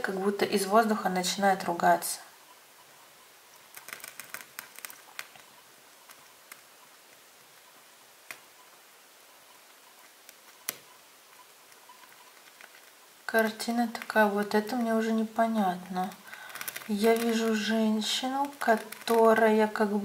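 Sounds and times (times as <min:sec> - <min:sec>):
handling clicks and rustles: 0:03.6 - 0:08.6, 0:09.7 - 0:19.8.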